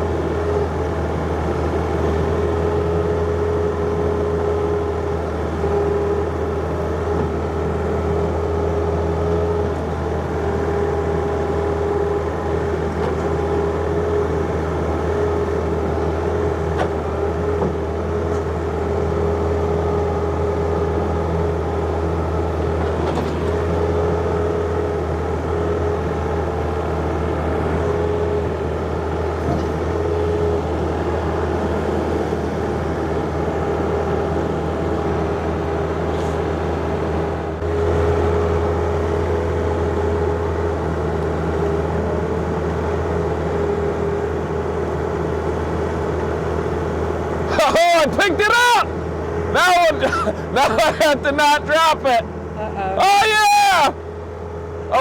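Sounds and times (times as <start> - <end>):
diesel engine running: 0.0 - 55.0
steady whine: 47.4 - 55.0.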